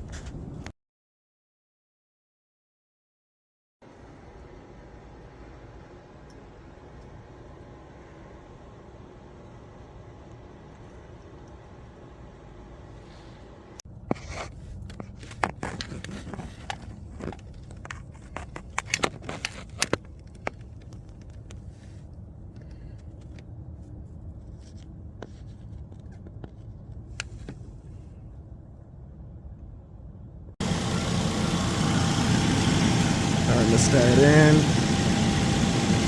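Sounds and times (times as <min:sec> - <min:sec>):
low steady hum: 0:03.9 - 0:36.0
car engine running loudly: 0:30.6 - 0:36.0.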